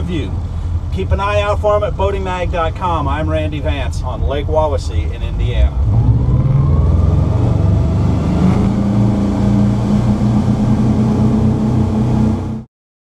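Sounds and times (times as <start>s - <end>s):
boat engines droning: 0.0s - 12.7s
steady hum: 4.0s - 12.7s.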